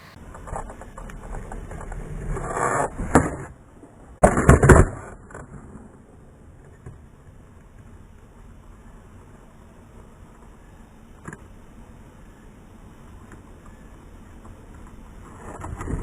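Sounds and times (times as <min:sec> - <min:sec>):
skateboard wheels rolling: 0:00.0 - 0:16.0
skateboard tail pop: 0:04.2 - 0:05.6
skateboard clattering on ground: 0:04.2 - 0:07.2.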